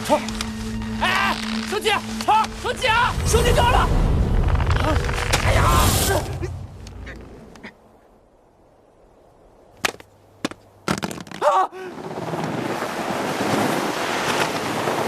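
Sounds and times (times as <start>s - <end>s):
steady rushing roar: 2.0s - 7.6s.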